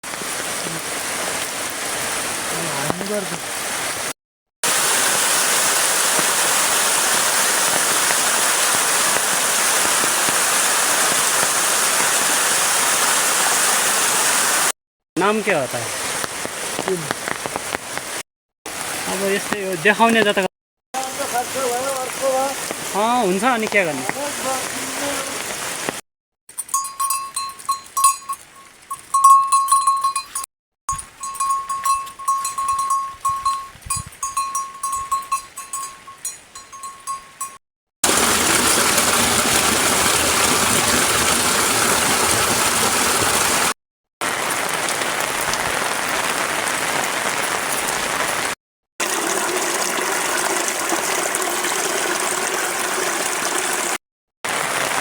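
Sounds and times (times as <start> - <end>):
heavy rain: 0.0 - 20.4, 21.0 - 26.0, 38.0 - 55.0
rushing water: 0.0 - 55.0
thin high tone: 26.6 - 37.6.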